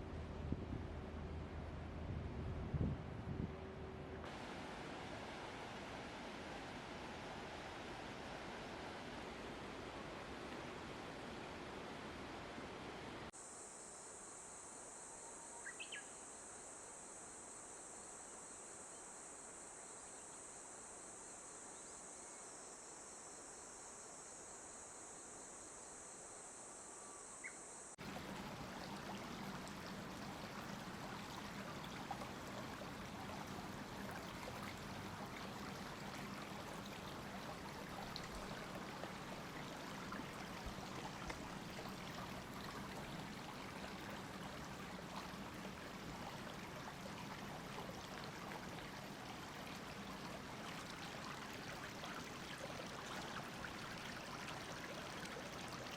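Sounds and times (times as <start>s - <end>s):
flowing stream: 4.2s - 13.4s, 28.0s - 55.9s
insects calling: 13.4s - 44.0s
faint chirps: 27.0s - 27.9s.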